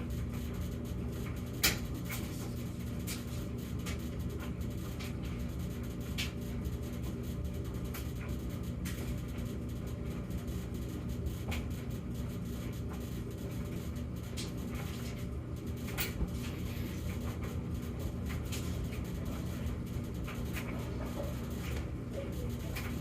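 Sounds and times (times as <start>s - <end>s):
dryer droning: 0.0s - 23.0s.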